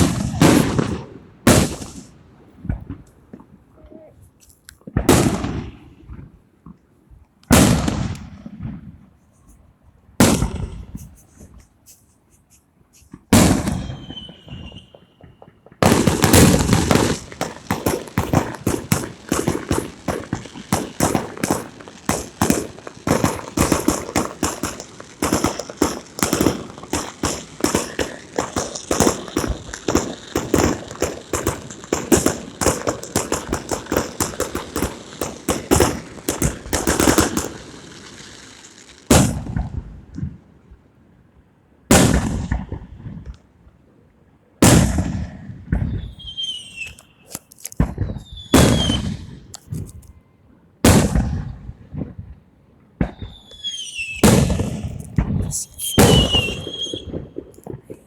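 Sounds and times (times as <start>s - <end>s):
loud firecracker bangs: 0.0s - 3.0s, 5.0s - 6.2s, 7.5s - 9.0s, 10.2s - 11.6s, 13.3s - 40.4s, 41.9s - 43.3s, 44.6s - 50.0s, 50.8s - 52.2s, 53.0s - 58.0s
firecracker string crackling: 10.2s - 40.3s, 46.1s - 50.1s, 53.4s - 58.0s.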